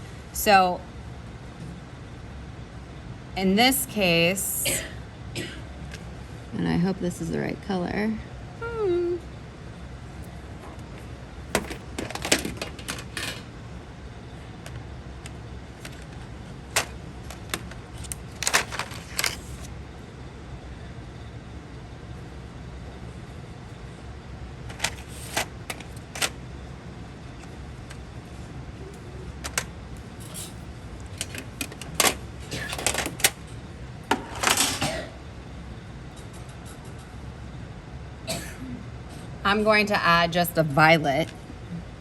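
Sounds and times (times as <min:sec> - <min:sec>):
low room hum: 0:00.0 - 0:42.0
pencils clicking on a tabletop: 0:16.8 - 0:19.7, 0:24.7 - 0:26.3, 0:29.4 - 0:29.7, 0:31.1 - 0:33.3.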